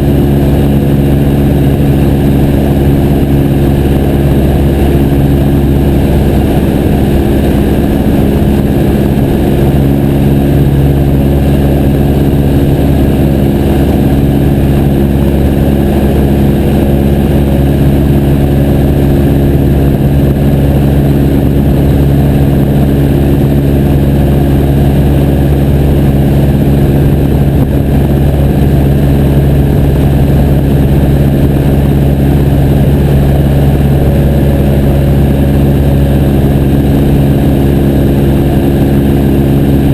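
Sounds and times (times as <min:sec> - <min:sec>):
propeller plane engine running: 0:00.0 - 0:39.9.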